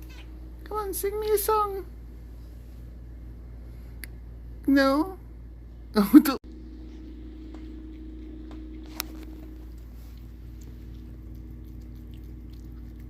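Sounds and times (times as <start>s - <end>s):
steady low hum: 0.0s - 13.0s
cat chewing: 6.8s - 13.0s.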